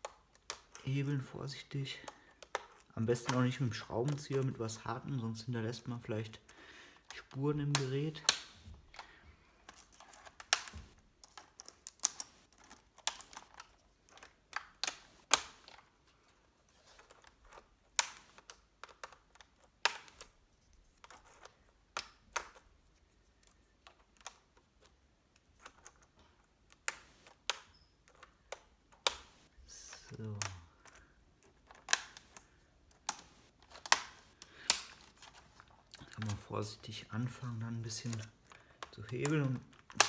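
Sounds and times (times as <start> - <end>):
plastic clicks and taps: 6.5 - 15.8, 30.2 - 36.6, 37.8 - 40.0.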